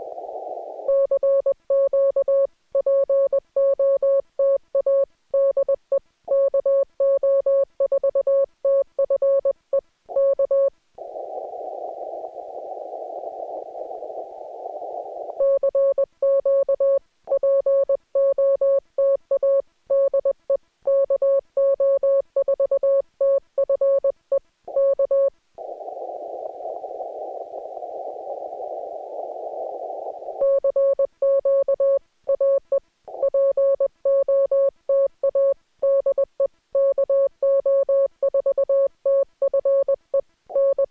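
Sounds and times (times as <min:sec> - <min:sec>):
radio band hiss: 0:00.0 - 0:00.9, 0:11.0 - 0:15.4, 0:25.6 - 0:30.4.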